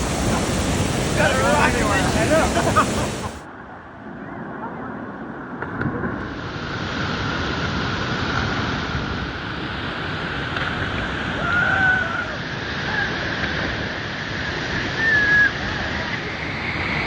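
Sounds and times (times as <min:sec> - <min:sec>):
waterfall rushing: 0:00.0 - 0:03.4.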